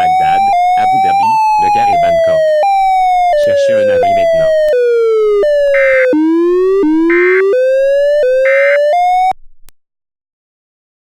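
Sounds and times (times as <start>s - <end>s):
high pulsing burst: 0.0s - 8.2s
electronic siren-like alert tone: 0.0s - 9.4s.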